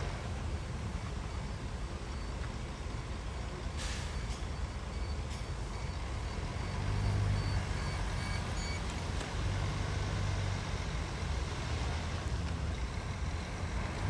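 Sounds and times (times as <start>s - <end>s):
diesel earthmoving machinery rumbling: 0.0s - 14.0s
reversing alarm beeps: 3.8s - 8.9s.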